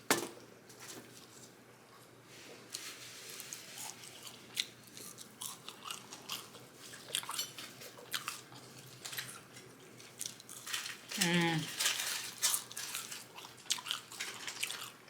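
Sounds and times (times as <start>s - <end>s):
person chewing food: 3.4s - 11.0s, 12.5s - 15.0s.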